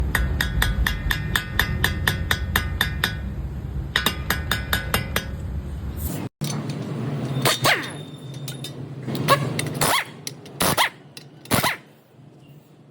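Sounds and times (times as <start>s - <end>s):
low car rumble: 0.0s - 9.8s.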